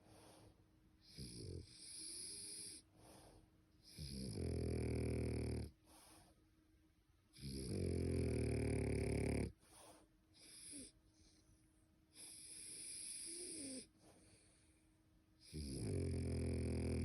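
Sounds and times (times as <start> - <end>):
wheezy dog breaths: 0.0 - 3.9, 5.7 - 6.4, 9.5 - 14.9
dog snoring: 0.1 - 6.3, 7.3 - 11.4, 12.1 - 14.7, 15.4 - 17.0.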